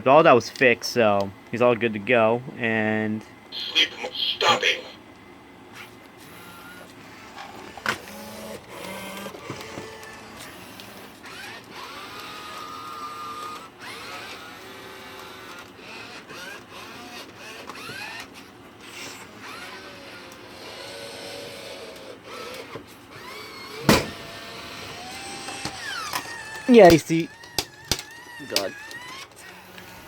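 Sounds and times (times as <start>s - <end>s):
robot gear motors whirring: 7.5s - 30.0s.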